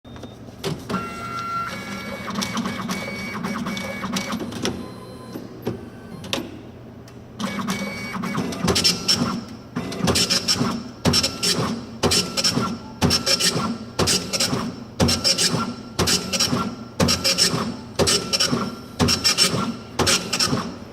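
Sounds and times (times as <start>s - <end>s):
print mechanism rapid clicks: 1.7s - 4.7s, 7.4s - 20.8s.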